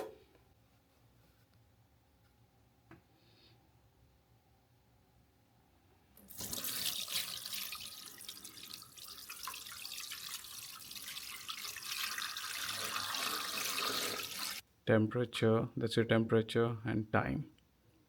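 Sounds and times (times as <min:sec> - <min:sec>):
water running from a tap: 0:06.2 - 0:14.6.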